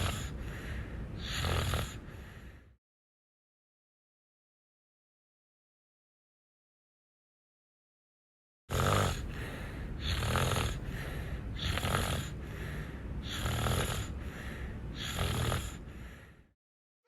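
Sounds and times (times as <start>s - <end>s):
loud snoring: 0.0s - 0.5s, 1.2s - 2.3s, 8.7s - 15.9s
steady low rumble: 0.2s - 1.2s, 9.2s - 15.0s.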